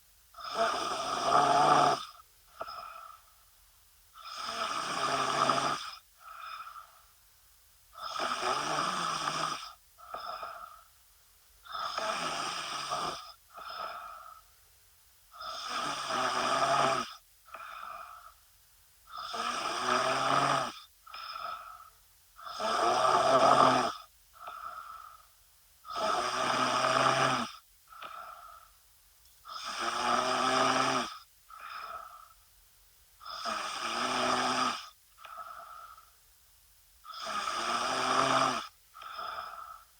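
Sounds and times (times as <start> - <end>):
woman snoring: 0.4 - 3.3, 4.2 - 7.0, 8.0 - 10.9, 11.6 - 14.5, 15.4 - 18.4, 19.1 - 28.8, 29.5 - 32.4, 33.2 - 36.1, 37.0 - 39.9
soft breath sound: 6.0 - 7.3, 21.0 - 22.1, 24.3 - 25.5, 27.9 - 29.4, 31.5 - 32.5, 35.1 - 36.2, 38.9 - 39.9.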